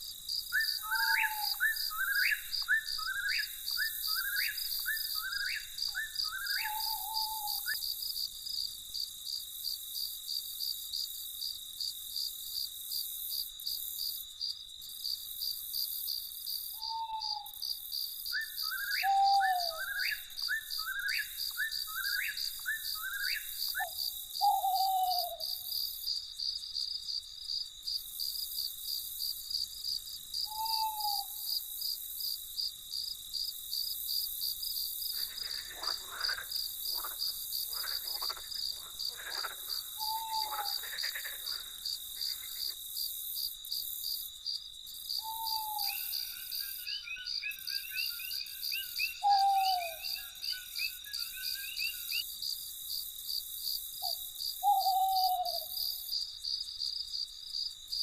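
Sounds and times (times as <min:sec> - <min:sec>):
crickets chirping: 0:00.0 - 0:58.0
night bird calling: 0:00.4 - 0:08.1, 0:16.8 - 0:26.0, 0:30.3 - 0:31.6, 0:35.1 - 0:42.8, 0:45.2 - 0:52.3, 0:54.0 - 0:56.2.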